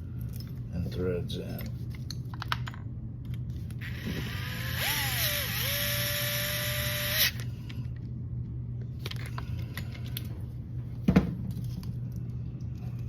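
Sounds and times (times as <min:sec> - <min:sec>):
electric screwdriver whirring: 0:03.8 - 0:07.4.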